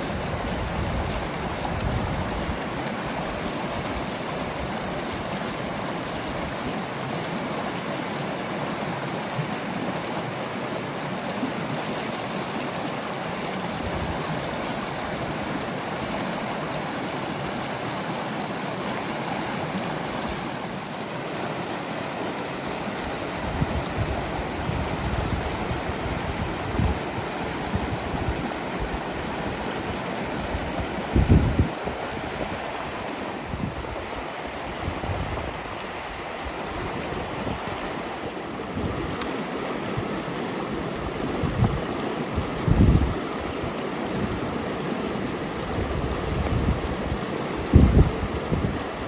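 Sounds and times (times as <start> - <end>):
wind buffeting microphone: 0.0 - 2.7, 23.0 - 39.2, 39.8 - 44.7, 45.3 - 49.0
river water rushing: 0.0 - 49.0.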